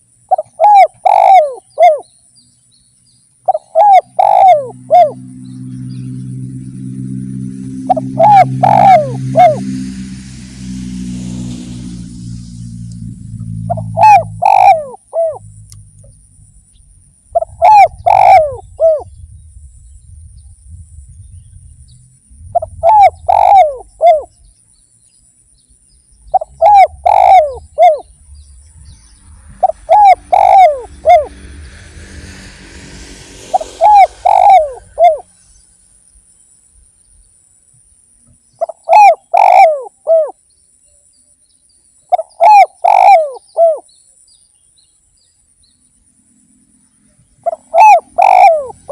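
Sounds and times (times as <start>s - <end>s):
dove cooing: 0.3s - 2.1s, 3.5s - 5.3s, 7.8s - 9.8s, 13.6s - 15.5s, 17.3s - 19.1s, 22.5s - 24.3s, 26.3s - 28.1s, 29.6s - 31.5s, 33.4s - 35.3s, 38.6s - 40.4s, 42.1s - 43.9s, 47.4s - 48.9s.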